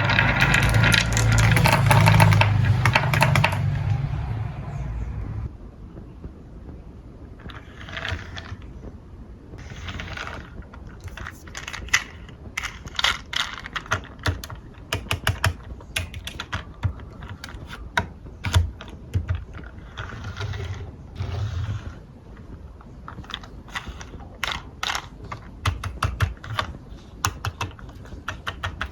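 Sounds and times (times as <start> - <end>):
marbles clicking and clacking: 0.0 - 3.8, 9.6 - 22.0, 23.1 - 28.9
marbles rolling on wooden track: 0.0 - 3.9, 7.4 - 8.7, 9.6 - 17.9, 18.5 - 26.8.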